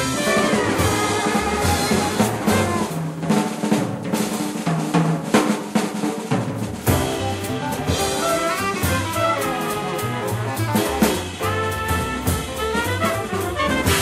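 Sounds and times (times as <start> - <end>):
walking bass: 0.0 - 3.3, 6.8 - 14.0
big band horns: 0.0 - 4.5, 6.7 - 14.0
jazz drum kit: 0.0 - 14.0.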